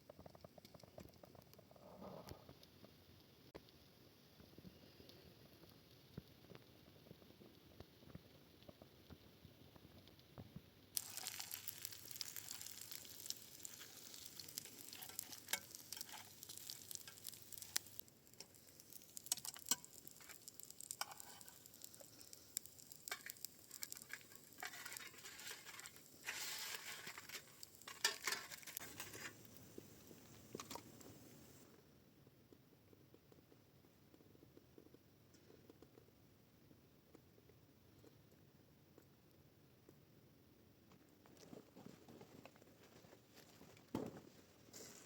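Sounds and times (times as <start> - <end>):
food sizzling in a pan: 11.0 - 31.7.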